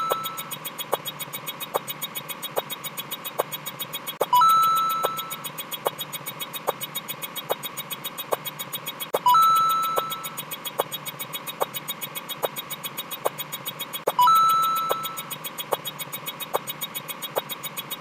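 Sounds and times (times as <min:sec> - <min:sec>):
video game coin sound: 0:00.0 - 0:00.5, 0:04.2 - 0:05.5, 0:09.2 - 0:10.4, 0:14.1 - 0:15.3
rapid steady ticking: 0:00.0 - 0:18.0
short blips: 0:00.0 - 0:18.0.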